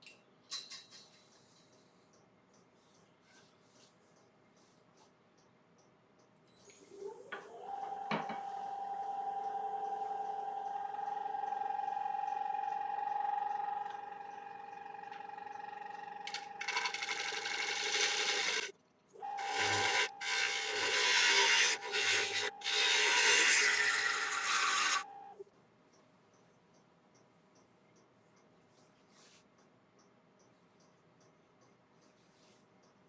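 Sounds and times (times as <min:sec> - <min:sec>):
lathe motor whine: 0:09.7 - 0:18.7, 0:19.4 - 0:25.2
tool scraping and shaving wood: 0:16.3 - 0:18.7, 0:19.4 - 0:25.1.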